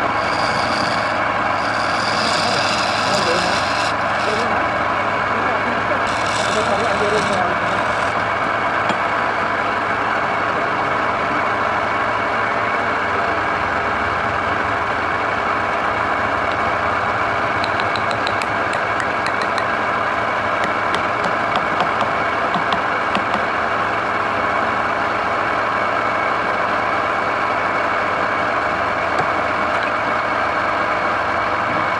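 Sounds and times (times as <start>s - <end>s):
wood lathe motor hum: 0.0s - 4.9s, 5.7s - 8.2s
sharp ticks: 17.6s - 19.7s.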